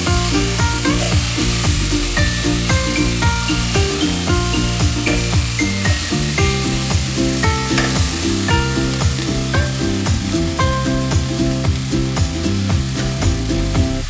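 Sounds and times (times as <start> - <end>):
background music with bass and beat: 0.0 - 14.0
food sizzling in a pan: 0.0 - 14.0.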